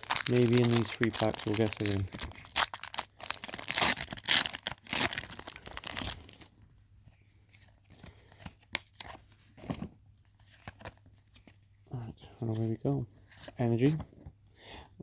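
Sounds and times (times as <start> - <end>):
foil wrapper tearing and crinkling: 0.0 - 6.5.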